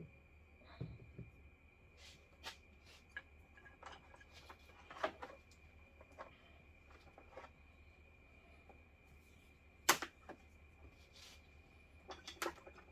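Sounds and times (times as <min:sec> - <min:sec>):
small clicks and rustles of handling: 0:02.4 - 0:07.7, 0:09.9 - 0:12.9.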